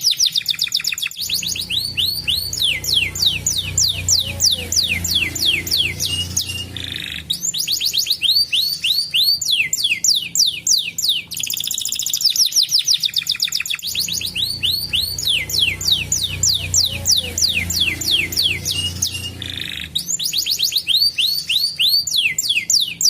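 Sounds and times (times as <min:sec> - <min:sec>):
canary singing trills: 0:00.0 - 0:23.0
low hum: 0:01.2 - 0:09.8.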